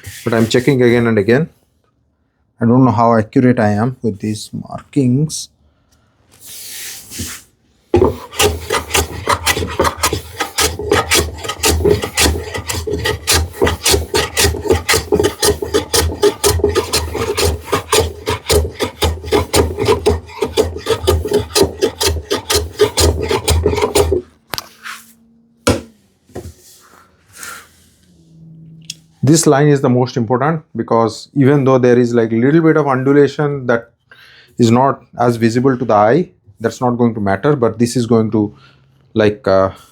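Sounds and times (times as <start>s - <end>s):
hand tool rasping wood: 8.0s - 24.3s.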